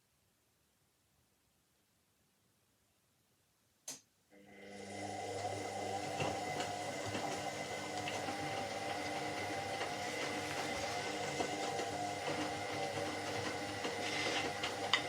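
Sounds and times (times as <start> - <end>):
washing machine motor running: 4.4 - 15.0.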